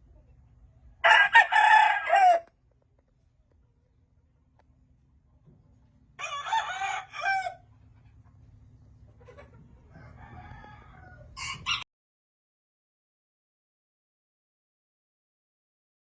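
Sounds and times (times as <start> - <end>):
distant rooster crow: 1.0 - 2.5, 6.2 - 7.6, 9.9 - 11.9
rooster crowing loudly: 1.0 - 2.5, 6.2 - 7.6, 9.9 - 11.8.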